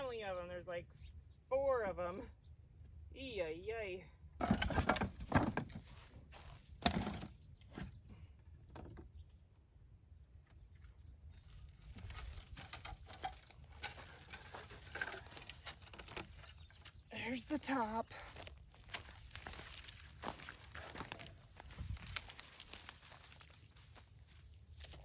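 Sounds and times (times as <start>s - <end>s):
wooden beehive parts knocking: 4.4s - 5.9s, 6.8s - 8.0s.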